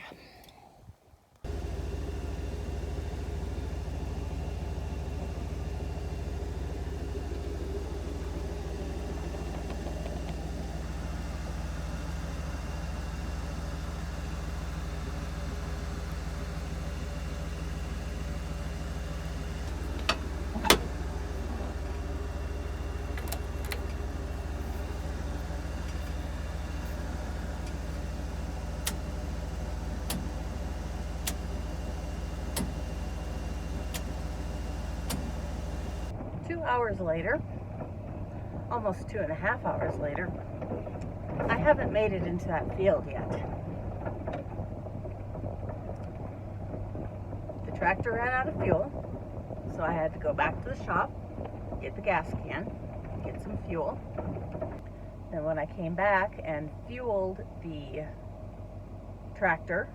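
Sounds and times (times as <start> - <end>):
engine running: 1.3 - 59.9
sharp clicks: 23.0 - 31.6.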